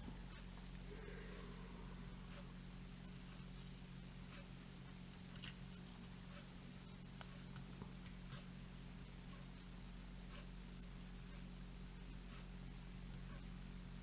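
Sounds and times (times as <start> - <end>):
low electrical hum: 0.0 - 14.0.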